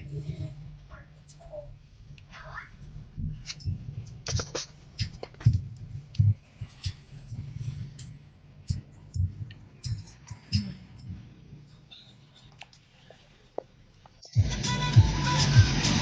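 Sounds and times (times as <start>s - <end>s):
low thumps: 2.7s - 11.6s.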